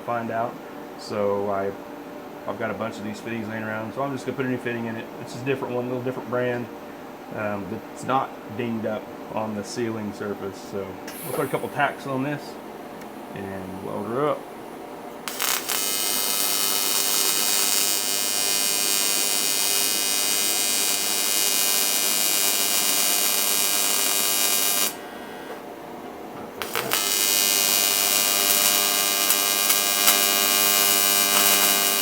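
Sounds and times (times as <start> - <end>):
welding arc buzzing: 11.1 - 12.4, 15.2 - 25.7, 26.6 - 32.0.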